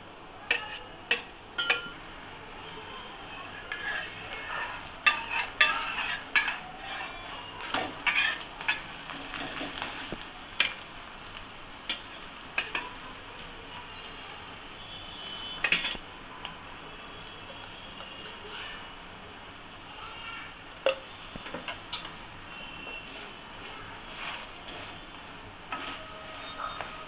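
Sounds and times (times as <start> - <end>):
faint sizzle of cooking: 0.0 - 27.0
metal utensil scraping a griddle: 3.5 - 10.7, 23.0 - 27.0.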